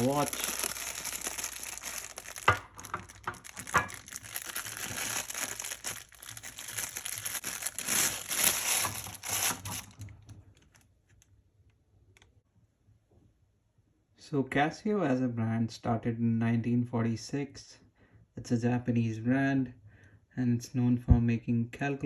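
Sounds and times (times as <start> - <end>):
packaging crinkling and rustling: 0.0 - 11.2.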